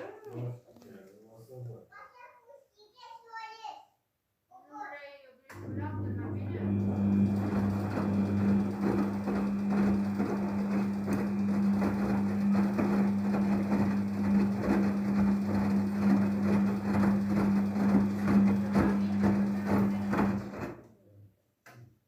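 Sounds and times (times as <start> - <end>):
washing machine motor hum: 5.5 - 20.8
drum knocking and swishing: 7.4 - 20.8.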